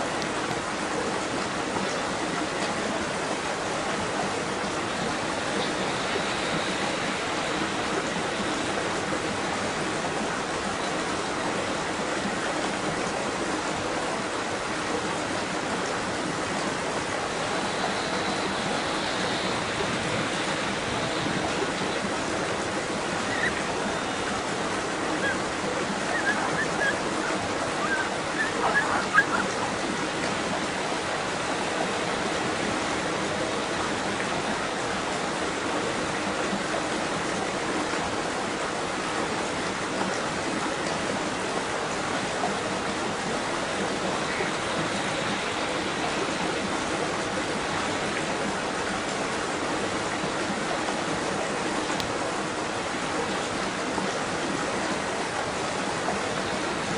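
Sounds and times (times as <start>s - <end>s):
flowing water: 0.0s - 56.9s
water splashes: 0.0s - 56.9s.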